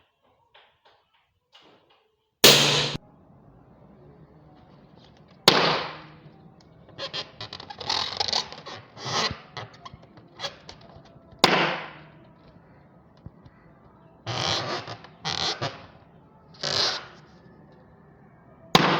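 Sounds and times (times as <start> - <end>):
balloon pops: 11.4 - 12.0.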